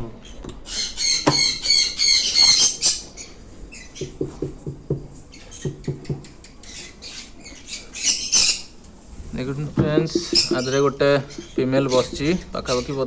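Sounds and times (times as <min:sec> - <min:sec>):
parrots chirping and squeaking: 0:00.2 - 0:04.3, 0:05.2 - 0:08.8, 0:09.4 - 0:13.0.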